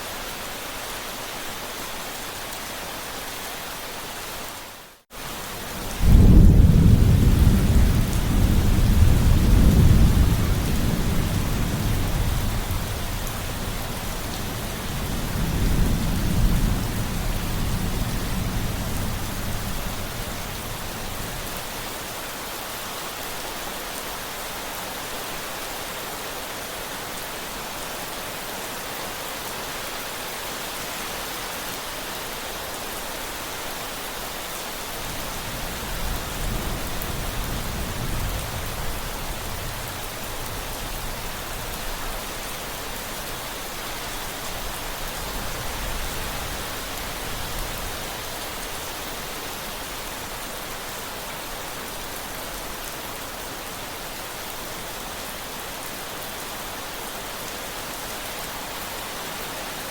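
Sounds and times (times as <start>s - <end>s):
steady rain: 0.0s - 59.9s
rolling thunder rumble: 5.8s - 20.6s.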